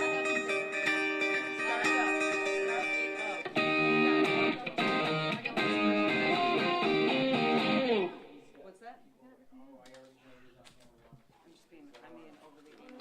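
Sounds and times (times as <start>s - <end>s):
guitar chords ringing: 0.0s - 8.5s.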